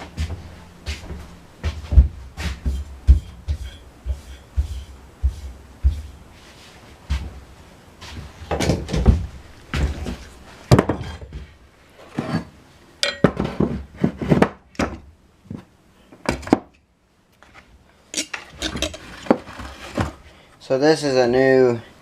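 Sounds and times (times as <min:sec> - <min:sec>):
tools knocking and clattering: 0:13.0 - 0:13.8, 0:18.2 - 0:20.1.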